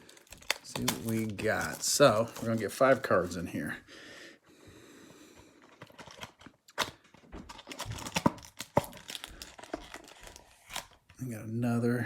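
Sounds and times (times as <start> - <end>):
plastic wrapper tearing and crinkling: 0.0 - 3.4, 5.7 - 11.1.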